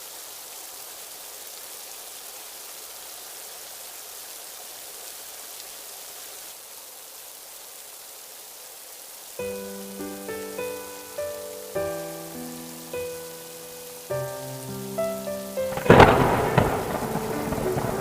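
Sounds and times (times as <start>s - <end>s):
rain falling: 0.0s - 18.0s
gentle piano music: 9.4s - 18.0s.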